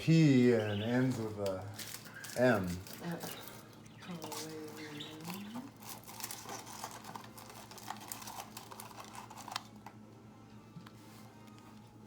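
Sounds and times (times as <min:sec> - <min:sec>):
wrapper crinkles and clicks: 0:01.4 - 0:10.0.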